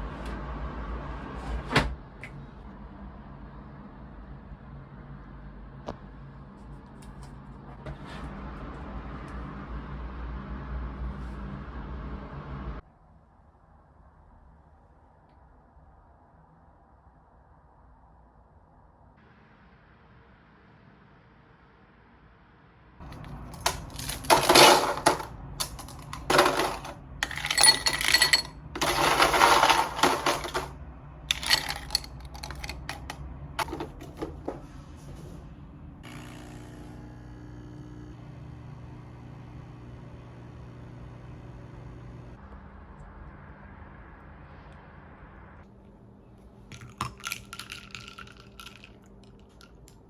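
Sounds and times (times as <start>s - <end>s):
clattering and rustling: 23.0s - 30.7s, 31.3s - 35.2s
appliance hum: 23.0s - 42.3s.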